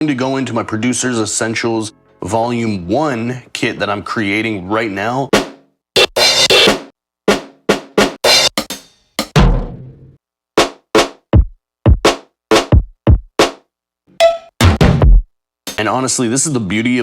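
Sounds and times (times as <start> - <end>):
deep kick drum hits: 14.6 - 15.3.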